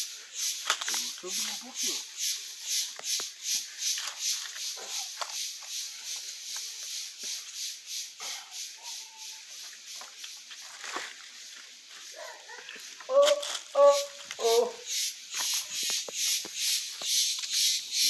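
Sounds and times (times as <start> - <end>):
insects calling: 0.0 - 18.0
cracks and rustles of dry debris: 0.6 - 1.6, 10.0 - 14.4.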